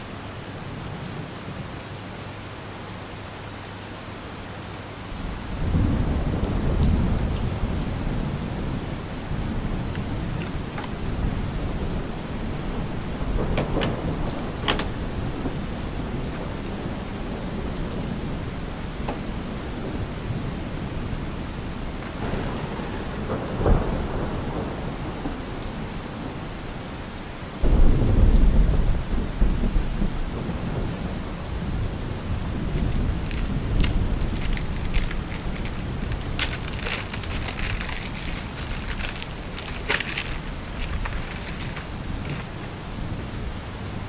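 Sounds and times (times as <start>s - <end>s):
steady rain falling: 0.0s - 44.0s
thunder rumbling: 5.2s - 26.3s, 27.6s - 44.0s
light clicks: 32.7s - 42.8s.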